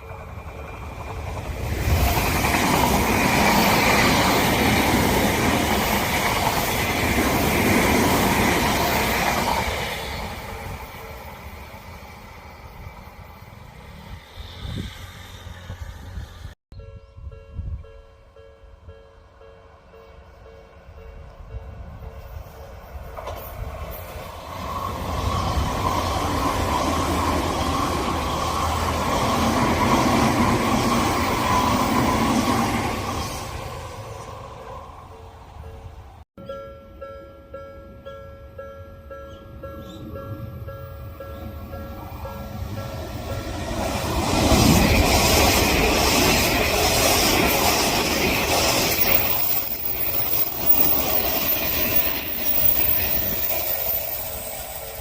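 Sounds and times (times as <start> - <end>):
electric train passing: 0.0 - 55.0
level crossing warning bell: 35.0 - 43.6.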